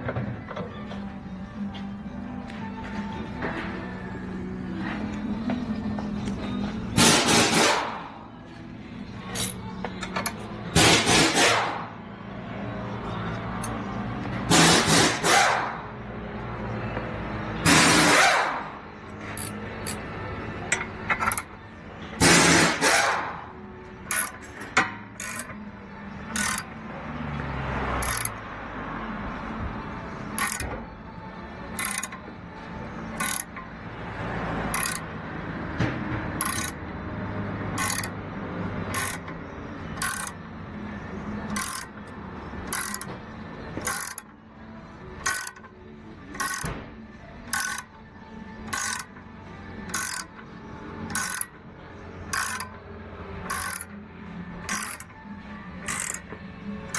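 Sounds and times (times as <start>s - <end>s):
ratchet wrench clicking: 9.2s - 11.7s, 19.3s - 21.6s, 22.2s - 26.8s, 28.0s - 28.5s, 30.3s - 30.8s, 31.6s - 32.4s, 33.0s - 33.8s, 34.6s - 35.2s, 36.3s - 37.0s, 37.7s - 40.7s, 41.3s - 44.4s, 45.1s - 46.8s, 47.4s - 56.9s.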